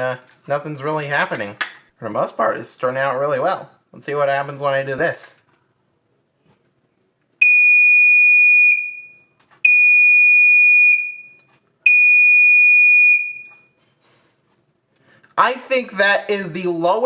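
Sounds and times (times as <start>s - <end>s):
smoke alarm beeps: 7.4s - 13.8s.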